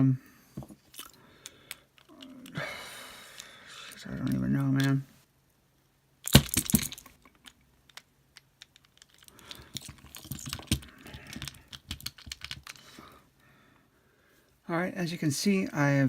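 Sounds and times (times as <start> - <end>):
padlock clicking and rattling: 0.9 - 2.6, 6.2 - 12.9.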